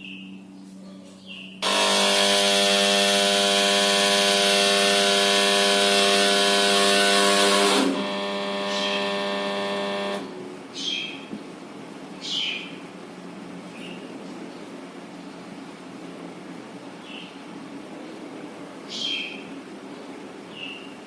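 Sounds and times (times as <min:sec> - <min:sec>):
air conditioner compressor whining buzz: 0:00.0 - 0:21.0
low steady hum: 0:00.0 - 0:21.0.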